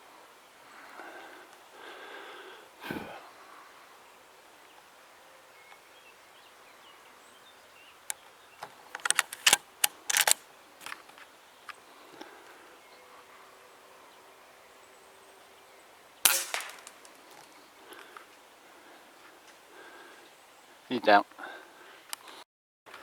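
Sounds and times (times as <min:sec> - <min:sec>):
faint birdsong: 0:00.0 - 0:23.0
sharp clicks and rattles: 0:08.9 - 0:11.0.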